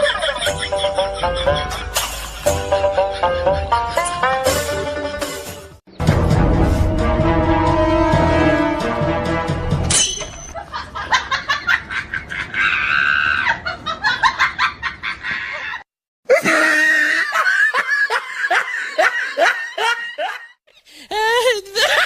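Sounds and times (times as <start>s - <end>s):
person laughing hard: 0.0s - 5.3s, 10.6s - 22.0s
scream-like cry: 12.5s - 13.6s, 15.3s - 17.5s.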